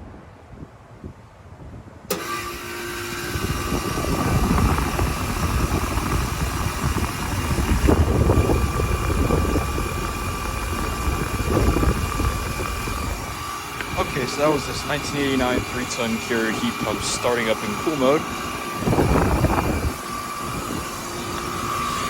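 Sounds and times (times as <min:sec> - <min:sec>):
heat pump running rumble and whine: 0:02.1 - 0:22.0
heat pump switch click: 0:12.6 - 0:15.7.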